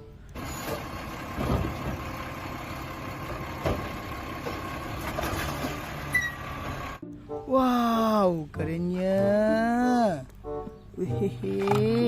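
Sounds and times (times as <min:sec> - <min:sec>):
engine idling: 0:00.2 - 0:07.0.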